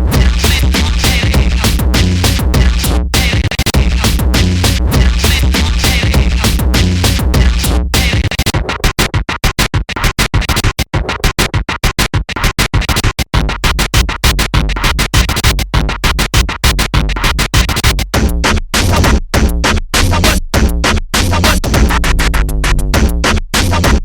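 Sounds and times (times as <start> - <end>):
deep bass: 0.0 - 8.2, 18.0 - 24.0
electronic music with stuttering edits: 0.0 - 24.0.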